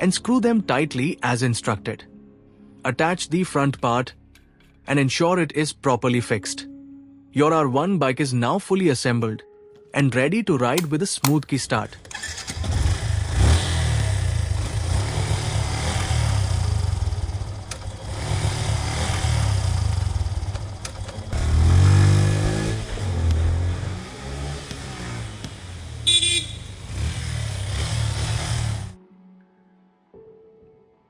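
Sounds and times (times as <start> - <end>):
short horn beep: 26.1 - 26.8.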